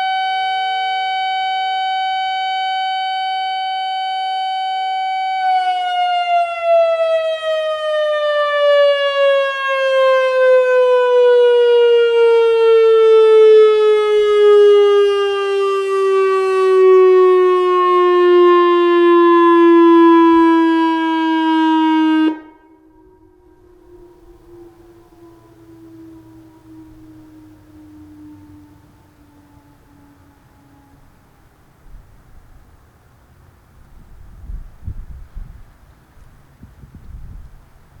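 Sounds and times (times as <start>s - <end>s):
tornado siren winding down: 0.0s - 32.1s
faint lingering tone: 22.4s - 31.4s.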